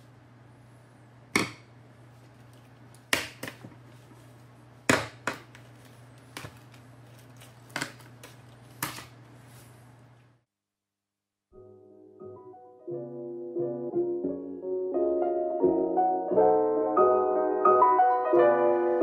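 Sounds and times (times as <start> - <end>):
faint steady hum: 0.0 - 10.5.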